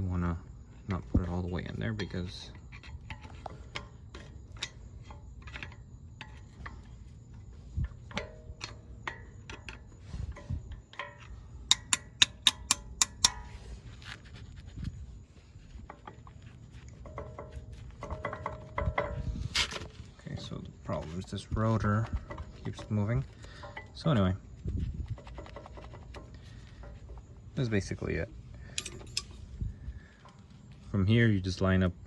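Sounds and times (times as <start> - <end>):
metal clicks and knocks: 7.8 - 13.7, 15.8 - 20.6, 21.2 - 24.2, 28.7 - 29.4.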